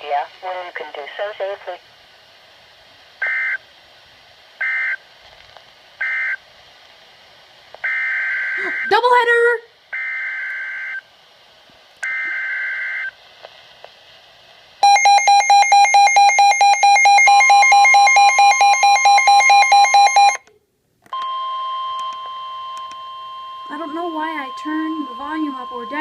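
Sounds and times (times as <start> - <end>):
data tones: 14.8 - 20.4, 21.2 - 26.0
rapid beeping alarm: 14.8 - 20.4, 22.4 - 26.0
steady warning alarm tone: 14.8 - 20.4, 21.2 - 26.0.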